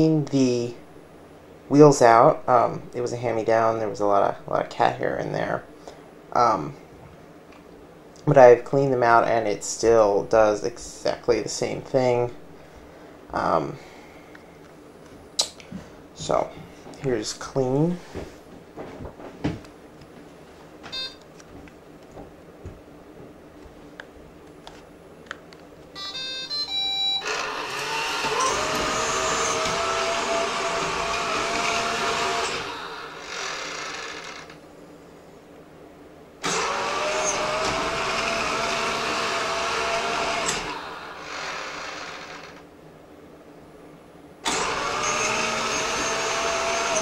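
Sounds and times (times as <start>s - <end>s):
robot vacuum beeps: 26.0s - 27.3s
vacuum motors whining: 26.0s - 34.7s, 36.4s - 42.7s, 44.4s - 47.0s.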